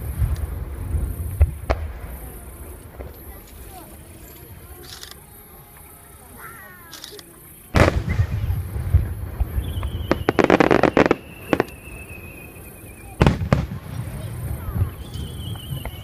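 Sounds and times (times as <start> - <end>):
dense rapid firework crackle: 0.0 - 4.8, 7.7 - 16.0
high thin whistle: 9.6 - 13.2, 15.0 - 16.0.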